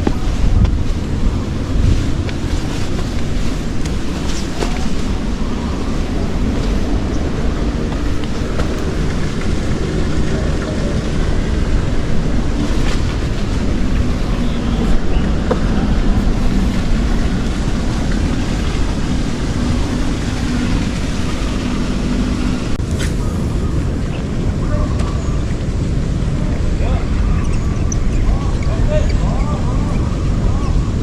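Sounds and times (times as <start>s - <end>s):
wind rumbling on microphone: 0.0s - 31.0s.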